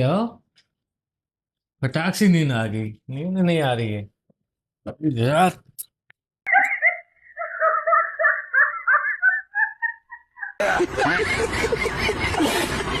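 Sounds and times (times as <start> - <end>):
person laughing: 6.5 - 13.0.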